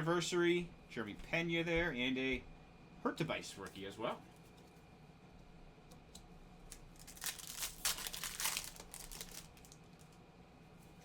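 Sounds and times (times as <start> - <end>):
wrapper crinkling and tearing: 6.7 - 10.2.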